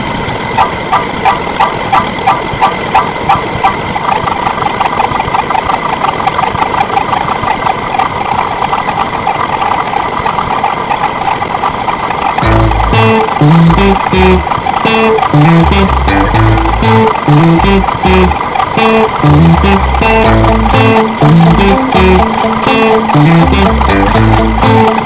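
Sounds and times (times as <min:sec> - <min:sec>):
machine pulsing: 0:00.0 - 0:25.0
machine running with high whine: 0:11.6 - 0:25.0.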